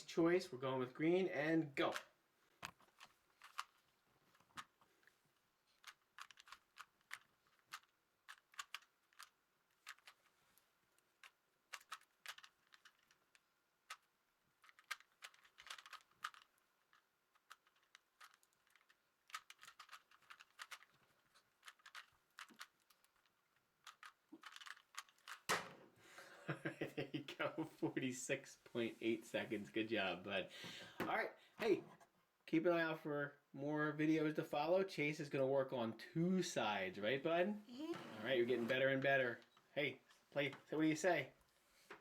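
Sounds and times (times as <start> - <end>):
puzzle cube clicking: 2.7 - 4.8, 5.7 - 10.2, 11.0 - 25.6.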